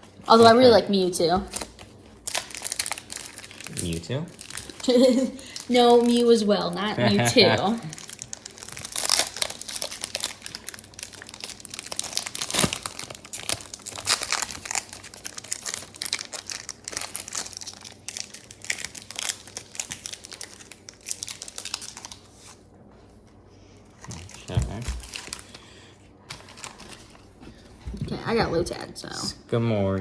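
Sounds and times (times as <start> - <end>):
foil wrappers tearing and crinkling: 1.4 - 22.6, 24.0 - 25.7, 26.3 - 27.3.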